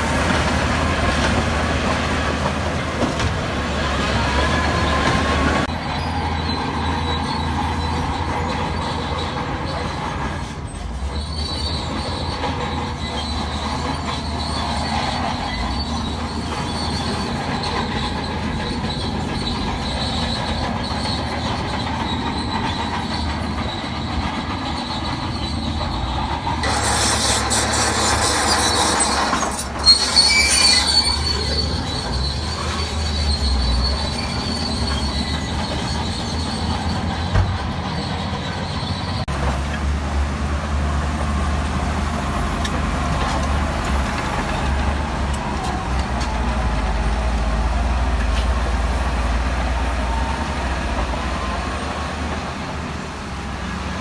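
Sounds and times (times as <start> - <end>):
bulldozer diesel engine droning: 0.0 - 54.0
metallic squeal of steel tracks: 1.2 - 39.3, 42.6 - 52.7.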